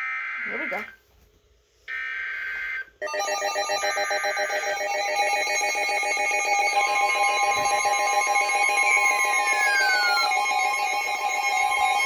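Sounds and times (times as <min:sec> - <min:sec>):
pulsing two-tone attention signal: 0:03.1 - 0:12.0
data burst screech: 0:07.5 - 0:12.0.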